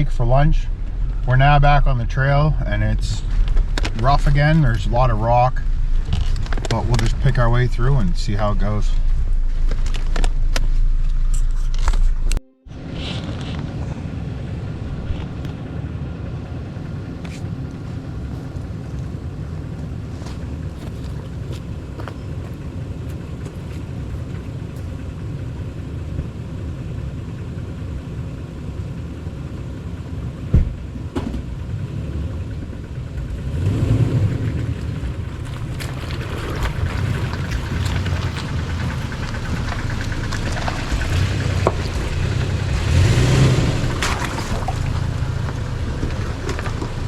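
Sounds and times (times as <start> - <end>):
engine and tyre rumble: 0.0 - 47.0
knocks and creaks: 2.5 - 4.8, 5.6 - 7.4, 34.8 - 42.8
sharp thump: 30.5 - 31.4.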